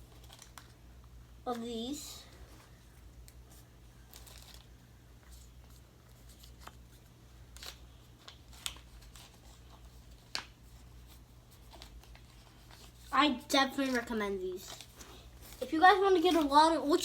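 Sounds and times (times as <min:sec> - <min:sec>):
cards and packaging rustling: 0:00.0 - 0:17.0.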